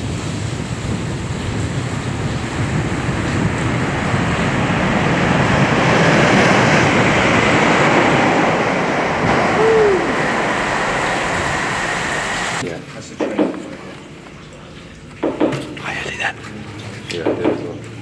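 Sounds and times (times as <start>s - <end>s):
train rumbling through tunnel: 0.0s - 12.7s
rising and falling tone: 5.4s - 12.6s.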